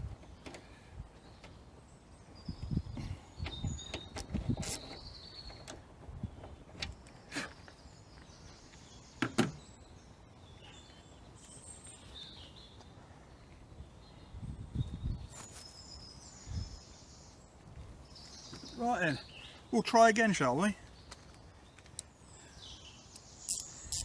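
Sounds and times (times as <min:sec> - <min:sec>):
tools clicking and knocking: 0:23.5 - 0:24.0.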